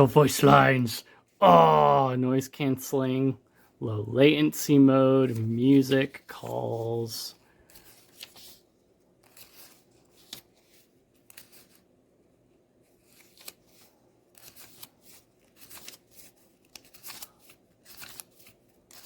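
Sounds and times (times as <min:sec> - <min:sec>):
paper rustling: 0:05.2 - 0:11.9, 0:12.8 - 0:19.0.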